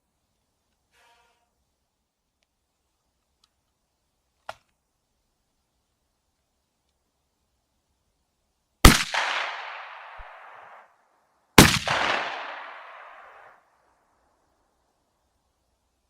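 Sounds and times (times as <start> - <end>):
shotgun shots with echo: 8.8 - 10.8, 11.6 - 13.5.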